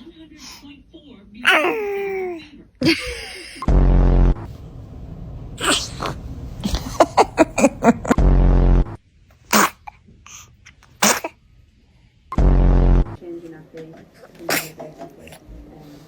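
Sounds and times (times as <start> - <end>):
low buzzing tone: 3.6 - 5.6, 8.2 - 9.0, 12.4 - 13.2
baby sneezing: 5.6 - 7.8, 9.5 - 11.4, 14.5 - 14.8.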